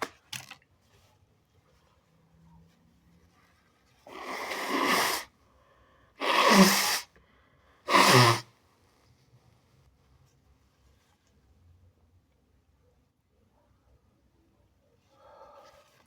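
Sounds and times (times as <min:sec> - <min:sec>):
person sneezing: 0:04.1 - 0:05.3, 0:06.2 - 0:07.1, 0:07.9 - 0:08.5.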